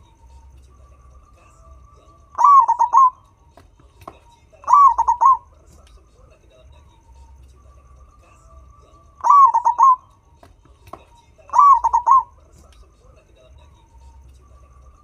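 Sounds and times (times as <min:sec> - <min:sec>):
turtledove cooing: 0:01.5 - 0:03.2, 0:04.6 - 0:05.5, 0:09.2 - 0:10.1, 0:11.5 - 0:12.4.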